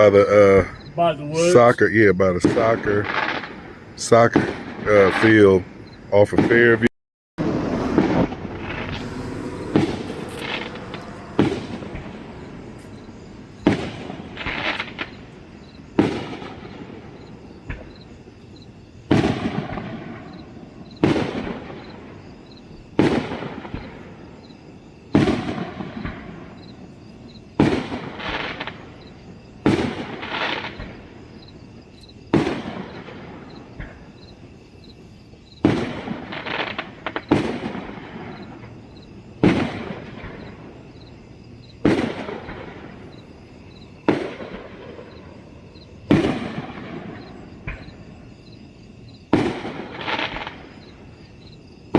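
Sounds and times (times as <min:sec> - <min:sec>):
fireworks crackling: 0:00.0 - 0:18.2, 0:19.1 - 0:22.2, 0:23.0 - 0:24.4, 0:27.6 - 0:31.6, 0:32.3 - 0:34.1, 0:35.6 - 0:40.9, 0:41.8 - 0:48.3, 0:49.1 - 0:51.6
fireworks booming with echo: 0:00.0 - 0:35.0, 0:35.6 - 0:51.9.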